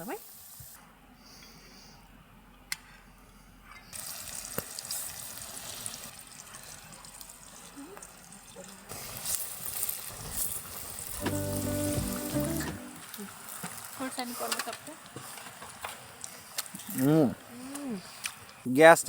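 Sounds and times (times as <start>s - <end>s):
food deep-frying in oil: 3.9s - 12.4s, 13.0s - 18.7s.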